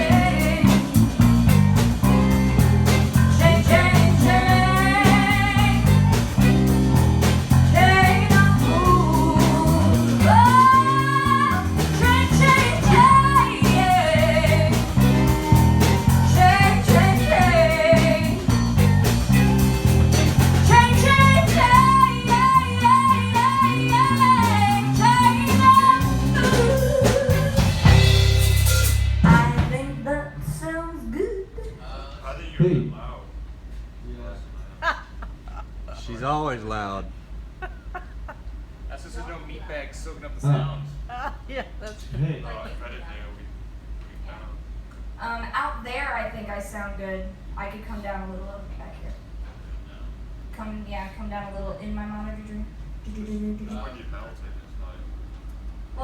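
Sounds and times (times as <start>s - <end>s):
live band with singer and guitar: 0.0s - 30.6s.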